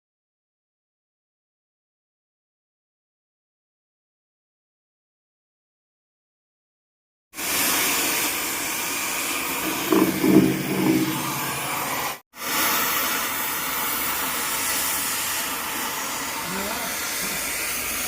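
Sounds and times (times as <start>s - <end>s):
arc welding hiss: 7.4s - 18.0s
short low-pitched sound: 9.6s - 11.9s.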